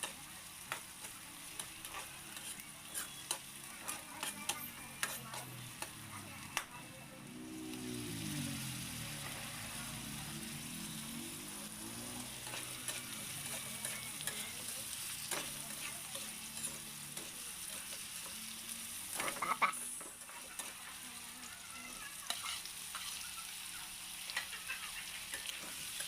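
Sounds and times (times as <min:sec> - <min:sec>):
spatula clacking and scraping: 0:00.0 - 0:06.7, 0:12.2 - 0:20.9, 0:22.2 - 0:23.3, 0:24.2 - 0:26.0
food sizzling in a pan: 0:00.0 - 0:26.0.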